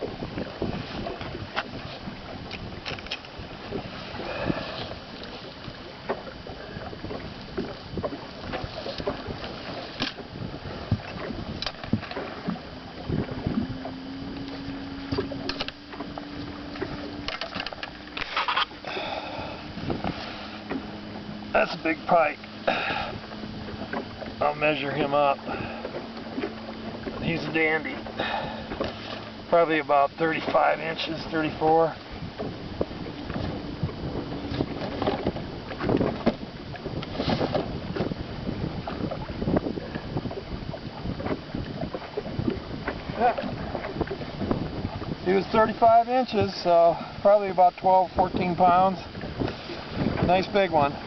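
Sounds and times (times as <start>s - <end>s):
knocks and rustling in boat: 0.0s - 51.0s
wind on microphone: 0.0s - 51.0s
steady hum: 9.1s - 34.7s.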